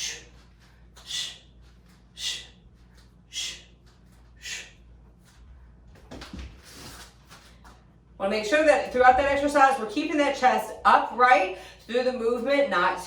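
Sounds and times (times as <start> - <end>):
person breathing forcefully: 0.0 - 5.6.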